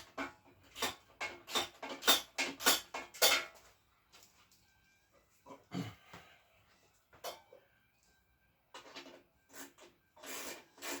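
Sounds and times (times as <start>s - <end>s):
metal tool clicking on bolts: 0.7s - 3.5s.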